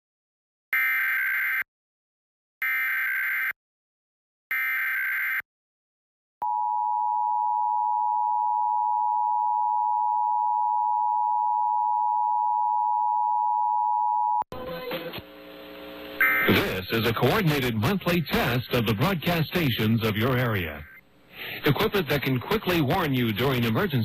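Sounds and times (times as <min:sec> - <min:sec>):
screechy data tone bursts: 0:16.2 - 0:16.5.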